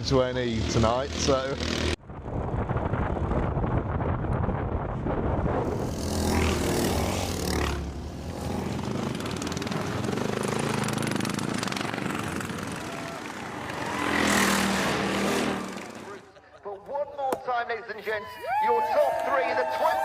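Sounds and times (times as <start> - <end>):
engines passing by: 0.0 - 2.0, 5.6 - 16.4
racing mower engines: 0.0 - 2.0, 5.6 - 16.5.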